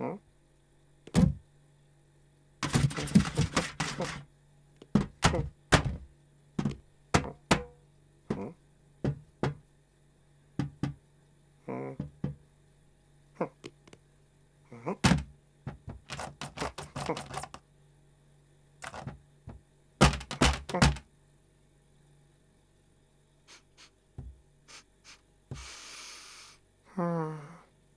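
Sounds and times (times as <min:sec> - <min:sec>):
knocks and thuds: 0:01.1 - 0:01.4, 0:02.6 - 0:04.2, 0:04.8 - 0:09.6, 0:10.6 - 0:11.0, 0:12.0 - 0:12.4, 0:15.0 - 0:17.6, 0:18.8 - 0:21.0.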